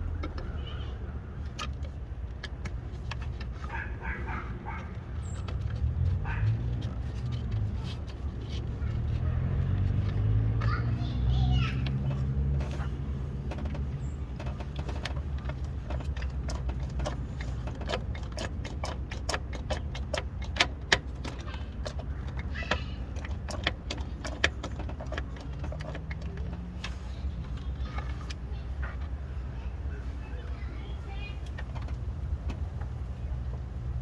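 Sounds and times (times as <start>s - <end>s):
car engine idling: 0.0s - 34.0s
sharp irregular clicks and taps: 11.7s - 29.2s.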